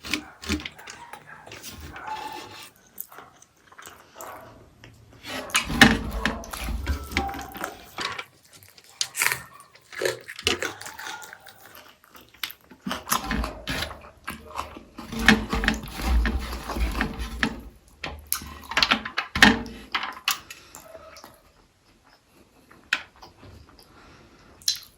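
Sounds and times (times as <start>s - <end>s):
wet chewing and smacking: 0.0s - 15.1s, 20.2s - 24.9s.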